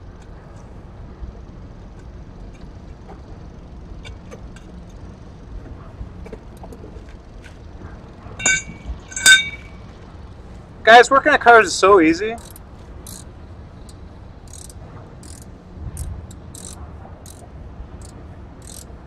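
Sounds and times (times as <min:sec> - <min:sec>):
low background hum: 0:00.0 - 0:19.0
metal tools clinking: 0:08.4 - 0:09.8, 0:12.4 - 0:13.2
faint ticks: 0:12.4 - 0:13.2, 0:13.8 - 0:17.4.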